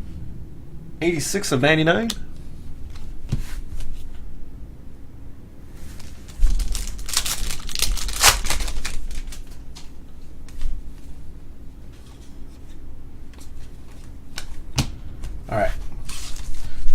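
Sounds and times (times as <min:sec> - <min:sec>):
plastic packaging crinkling: 0:05.9 - 0:10.0.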